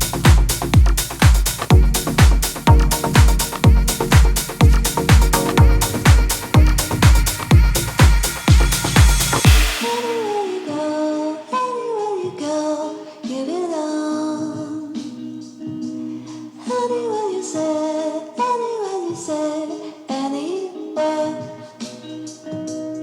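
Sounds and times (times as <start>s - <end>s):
sliding melody over held chords: 1.7s - 11.7s.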